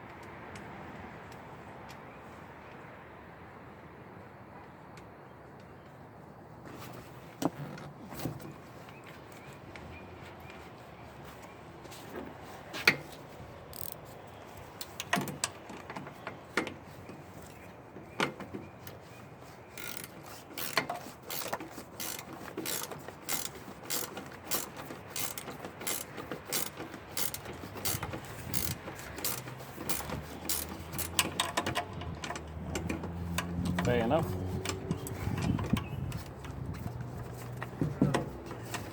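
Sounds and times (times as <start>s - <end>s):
ratchet clicking: 13.7s - 14.0s, 19.8s - 33.8s.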